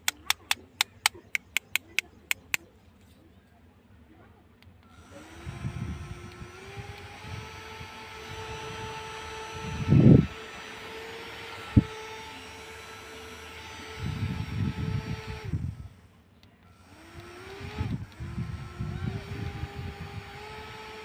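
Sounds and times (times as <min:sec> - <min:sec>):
sharp click: 0:00.0 - 0:02.7
small electric motor whining: 0:04.9 - 0:21.0.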